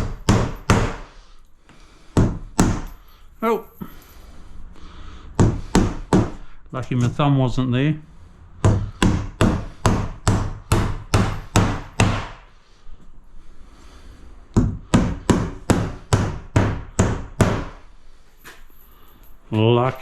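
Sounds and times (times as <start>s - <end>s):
hammer driving nails: 0.0s - 1.2s, 2.1s - 2.9s, 5.4s - 6.4s, 8.6s - 12.4s, 14.6s - 17.8s.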